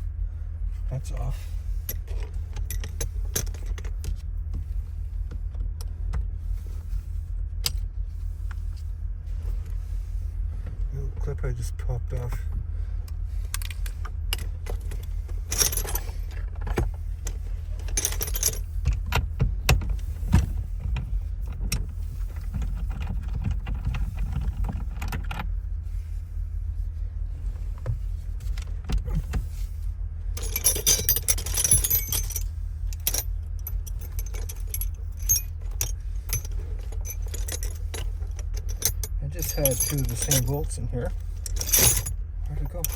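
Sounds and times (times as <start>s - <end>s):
steady low rumble: 0.0s - 42.9s
small metal parts rattling: 13.6s - 16.4s, 17.2s - 18.8s, 30.4s - 42.9s
keys jangling: 14.4s - 16.2s, 17.8s - 18.7s, 30.4s - 42.9s.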